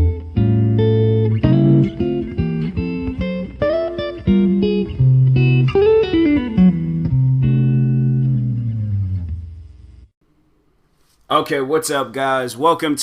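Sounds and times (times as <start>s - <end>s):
guitar music: 0.0s - 10.0s.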